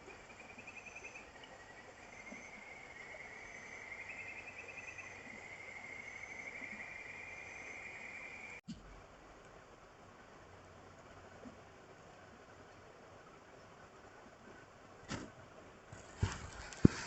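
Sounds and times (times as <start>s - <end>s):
insects trilling: 0.0s - 8.6s.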